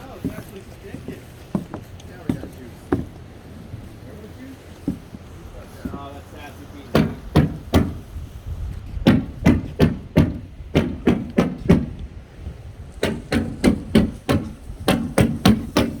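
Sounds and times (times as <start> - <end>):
nails hammered into plywood: 6.9 - 8.1, 9.0 - 12.1, 13.0 - 16.0.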